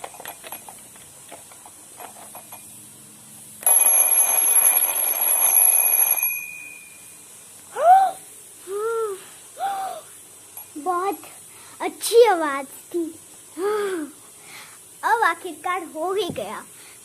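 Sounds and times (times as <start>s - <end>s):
alarm clock ringing: 3.6s - 7.2s.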